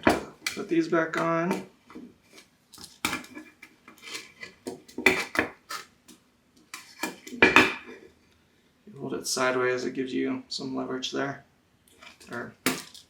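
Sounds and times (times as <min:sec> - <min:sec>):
metal hardware clinking: 0:12.2 - 0:13.0.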